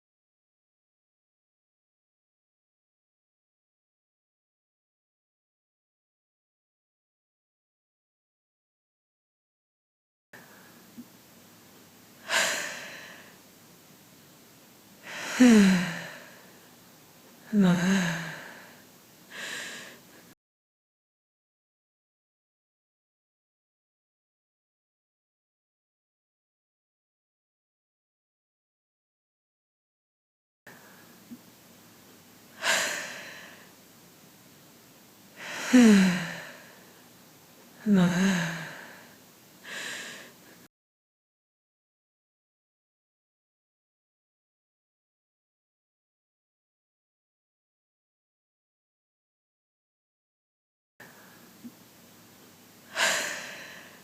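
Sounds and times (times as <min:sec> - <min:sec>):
soft breath: 0:10.4 - 0:11.0, 0:12.2 - 0:13.4, 0:15.0 - 0:16.8, 0:17.5 - 0:20.4, 0:30.7 - 0:31.4, 0:32.6 - 0:33.8, 0:37.9 - 0:40.7, 0:51.0 - 0:51.7, 0:52.9 - 0:54.0
woman sighing exhales: 0:15.1 - 0:16.4, 0:17.5 - 0:18.8, 0:35.4 - 0:36.8, 0:37.8 - 0:39.1.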